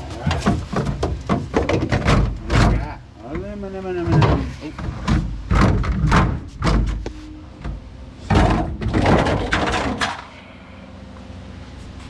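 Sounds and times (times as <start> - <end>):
metal parts knocking and scraping: 8.3 - 10.4.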